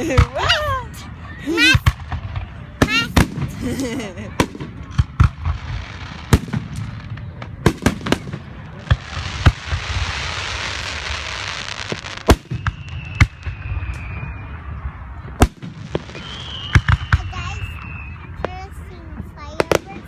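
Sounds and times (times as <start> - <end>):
fireworks bangs and cracks: 0.0 - 20.0
fireworks crackling hiss: 2.8 - 4.7, 5.4 - 14.2, 15.4 - 20.0
high falling whistle: 12.4 - 14.6, 16.1 - 18.3.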